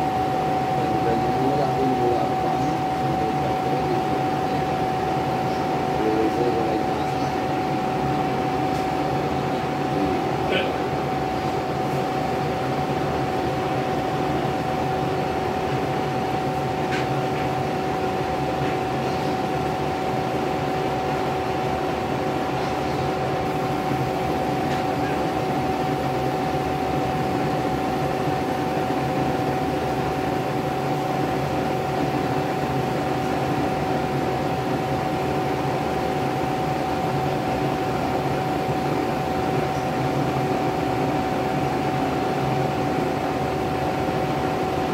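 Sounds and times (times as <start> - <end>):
constant machine whine: 0.0 - 44.9
fans whirring: 0.0 - 44.9.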